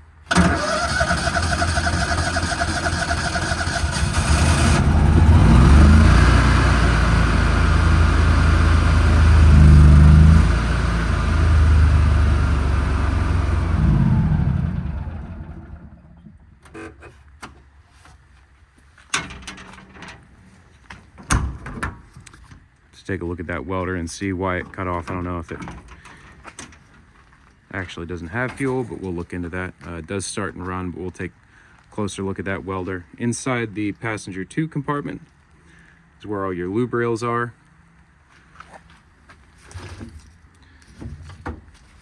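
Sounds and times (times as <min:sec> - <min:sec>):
engine starter cranking: 0:00.3 - 0:10.1
engine running: 0:00.3 - 0:16.6.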